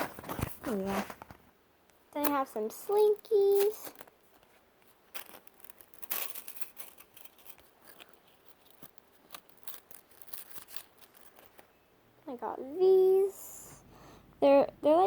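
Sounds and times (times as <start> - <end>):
slinky coils clicking and rattling: 2.2 - 4.1, 5.1 - 11.7.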